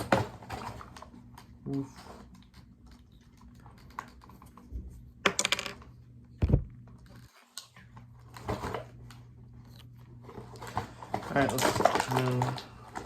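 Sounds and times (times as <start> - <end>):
plastic parts clattering: 10.3 - 13.0.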